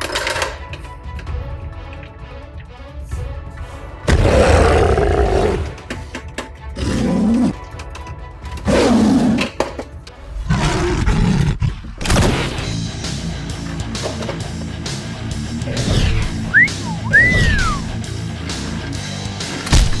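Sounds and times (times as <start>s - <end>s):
background music: 0.0s - 20.0s
beast roar sound effects: 4.1s - 5.8s, 6.8s - 7.6s, 10.5s - 11.7s.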